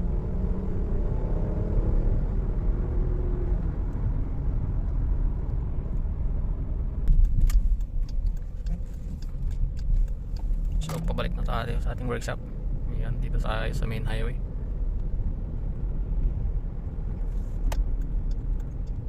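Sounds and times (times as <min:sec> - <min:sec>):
road rumble: 0:00.0 - 0:19.0
car engine running: 0:04.1 - 0:19.0
sharp clicks and knocks: 0:07.0 - 0:11.2, 0:17.6 - 0:19.0.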